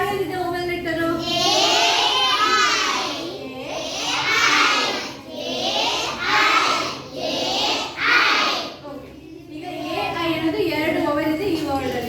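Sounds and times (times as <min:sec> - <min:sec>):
children calling in chorus: 0:01.2 - 0:08.8.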